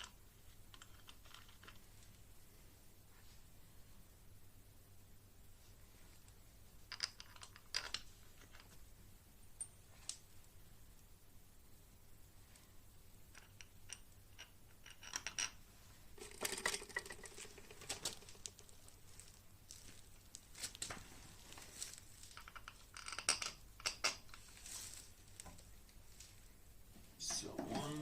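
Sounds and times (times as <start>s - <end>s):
rustling: 12.4s - 28.0s.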